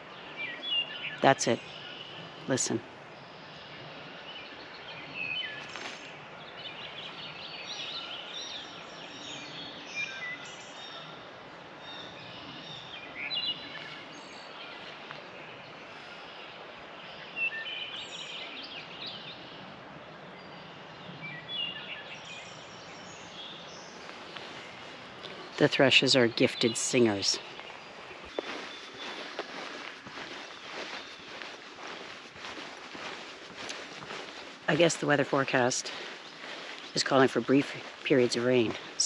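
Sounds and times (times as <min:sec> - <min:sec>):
steady outdoor hiss: 0:00.0 - 0:39.0.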